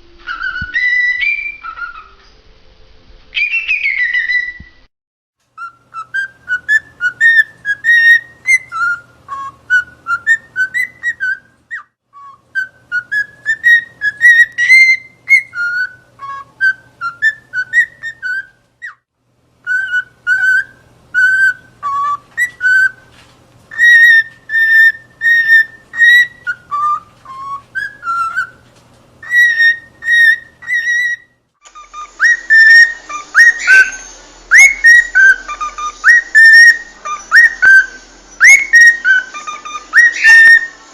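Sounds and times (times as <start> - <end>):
cockatiel whistling: 0.2 - 2.2, 3.3 - 4.8, 5.6 - 19.0, 19.6 - 23.1, 23.7 - 28.6, 29.2 - 40.9
background hiss: 12.5 - 40.9.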